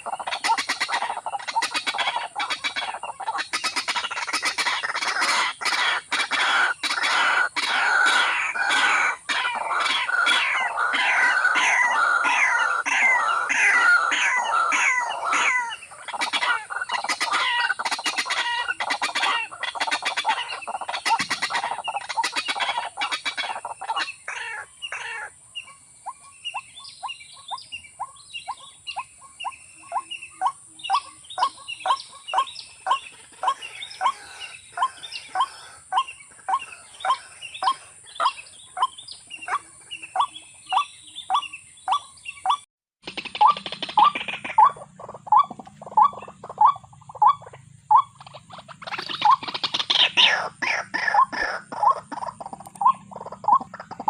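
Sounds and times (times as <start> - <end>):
birds clucking calls: 0.0 - 54.0.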